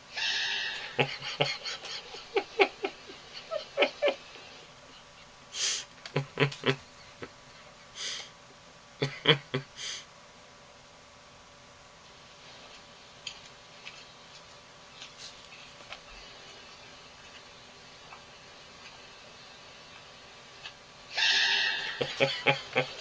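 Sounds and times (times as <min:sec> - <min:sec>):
person laughing: 0:00.7 - 0:04.4, 0:06.1 - 0:07.4, 0:09.0 - 0:10.0, 0:21.8 - 0:23.0.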